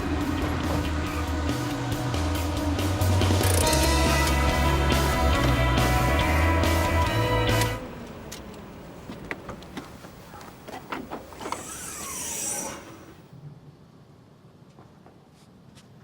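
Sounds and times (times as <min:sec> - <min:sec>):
sliding scraping noise: 0:10.7 - 0:13.3.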